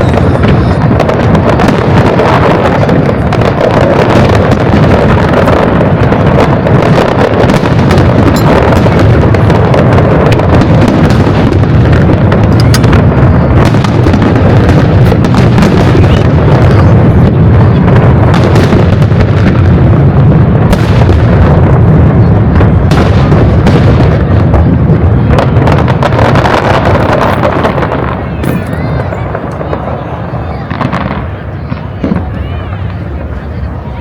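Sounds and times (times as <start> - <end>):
fireworks booming and crackling: 0.0 - 34.0.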